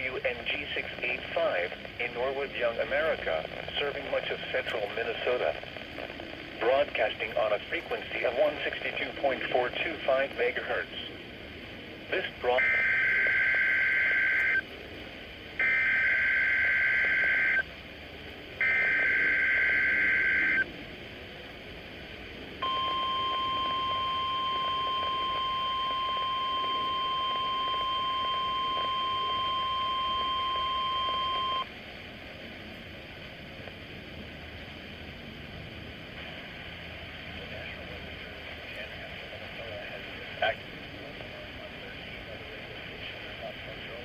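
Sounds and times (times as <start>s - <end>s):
faint radio hiss: 0.0s - 44.0s
buzzing chirping data tones: 12.2s - 14.6s, 15.6s - 17.7s, 18.6s - 20.7s, 22.6s - 31.7s
steady warning alarm tone: 12.4s - 14.6s, 15.6s - 17.7s, 18.6s - 20.7s, 22.6s - 31.7s.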